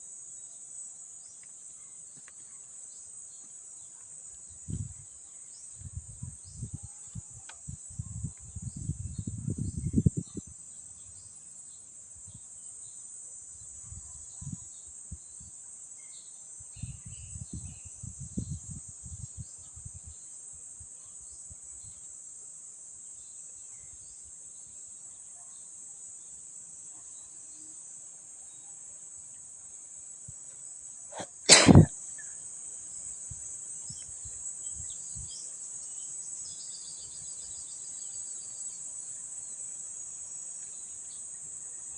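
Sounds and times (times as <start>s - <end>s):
insects chirping chorus: 0.0s - 41.9s.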